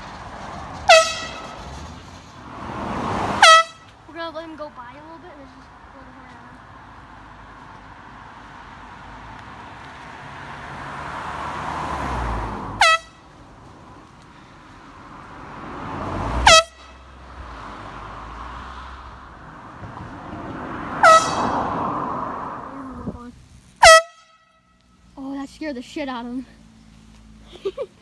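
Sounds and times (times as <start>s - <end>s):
cars passing: 0.0s - 28.0s
air horn blasts: 0.8s - 1.6s, 3.3s - 3.9s, 12.7s - 13.3s, 16.4s - 17.1s, 21.0s - 21.8s, 23.8s - 24.9s.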